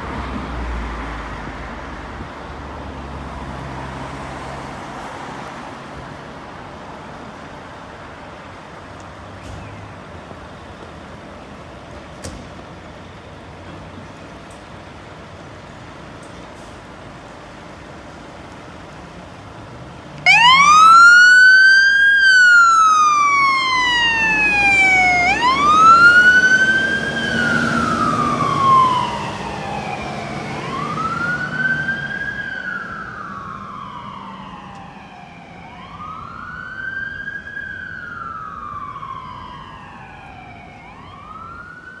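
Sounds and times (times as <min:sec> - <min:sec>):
truck engine rumbling: 0:07.1 - 0:34.6
fire engine siren wailing: 0:20.2 - 0:42.0.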